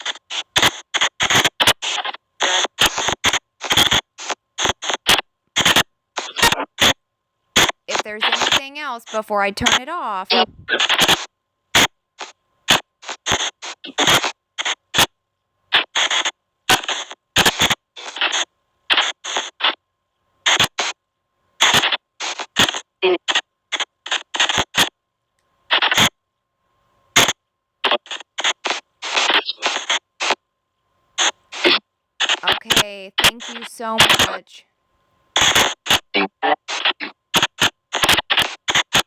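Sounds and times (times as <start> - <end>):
chopped noise bursts: 7.9 - 10.5
garbled voice-like fragments: 7.9 - 10.5, 32.4 - 34.6.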